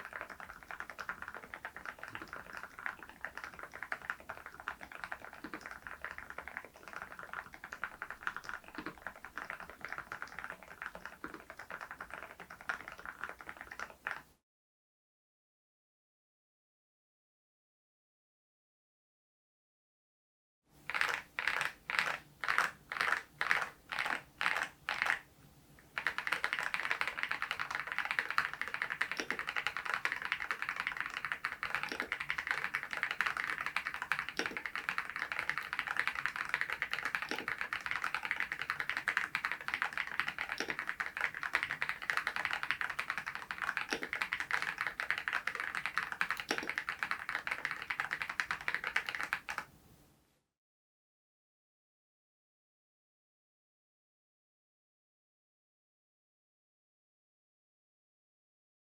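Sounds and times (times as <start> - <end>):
mechanical keyboard typing: 0.0 - 14.2, 20.9 - 25.2, 26.0 - 49.7.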